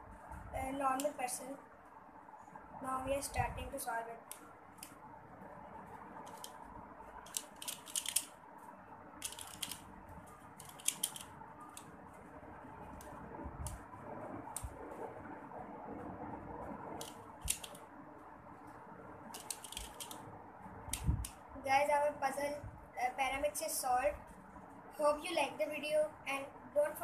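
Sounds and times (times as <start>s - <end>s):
puzzle pieces clicking: 7.3s - 8.3s, 9.2s - 9.8s, 10.6s - 11.3s.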